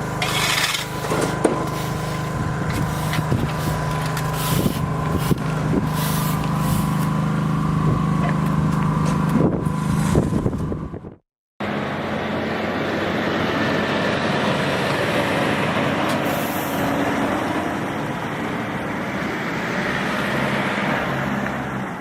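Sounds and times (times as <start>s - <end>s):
motor humming: 0.0s - 11.0s.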